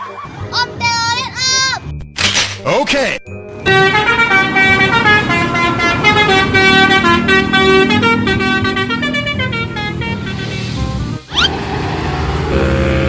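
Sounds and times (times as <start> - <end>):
multi-tone bus air horn tune: 3.6 - 11.1, 12.4 - 13.0.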